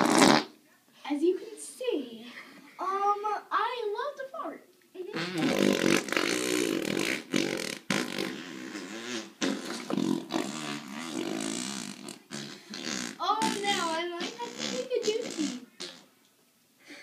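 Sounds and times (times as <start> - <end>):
wavering fart noises: 0.0 - 0.6, 5.1 - 16.1.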